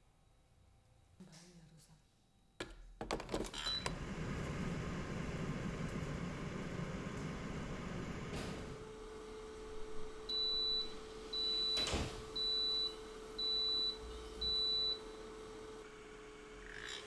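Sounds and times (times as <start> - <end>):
air fryer beeping: 3.6 - 8.3, 10.3 - 15.2.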